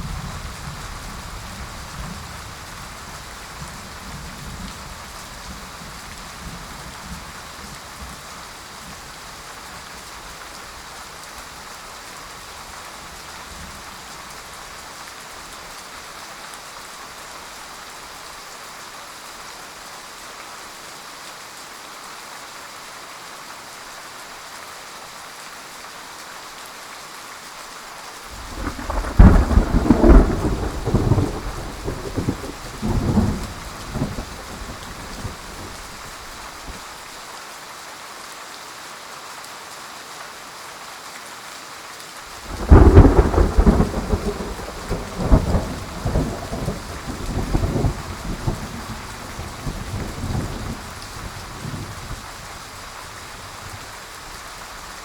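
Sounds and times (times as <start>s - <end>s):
heavy rain: 0.0s - 55.0s
loud thunderclap: 28.4s - 35.9s, 42.5s - 52.2s
thunder rumbling: 28.4s - 36.8s, 42.4s - 52.4s.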